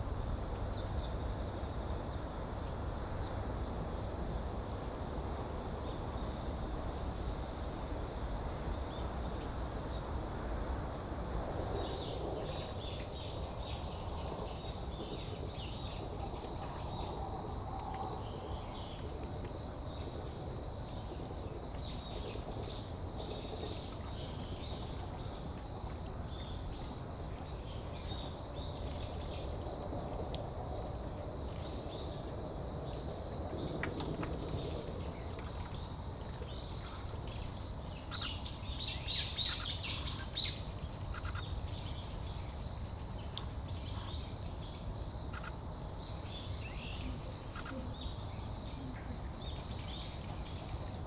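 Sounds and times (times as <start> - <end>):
insects trilling: 10.9 - 51.0
small bird calls: 38.1 - 41.5.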